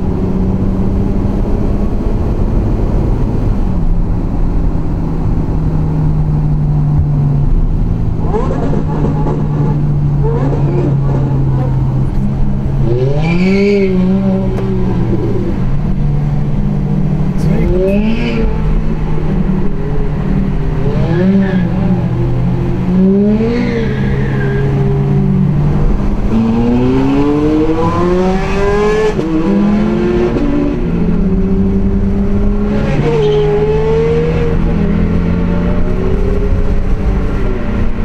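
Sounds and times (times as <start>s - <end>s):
sports car engines revving: 0.0s - 38.0s.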